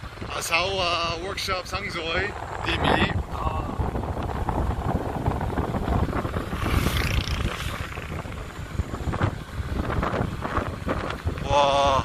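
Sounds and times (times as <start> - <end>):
road noise: 0.0 - 12.0
wind buffeting microphone: 0.0 - 12.0
motorbike engine: 3.3 - 11.4.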